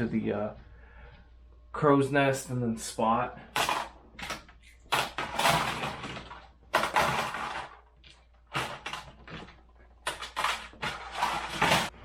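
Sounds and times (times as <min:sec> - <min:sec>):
plastic toy bricks rattling: 0:08.5 - 0:11.9.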